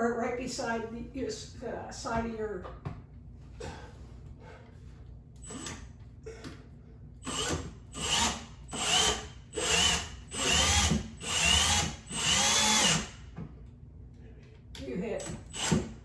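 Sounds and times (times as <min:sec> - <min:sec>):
power drill whine: 0:05.4 - 0:05.8, 0:07.2 - 0:13.2, 0:15.2 - 0:15.9.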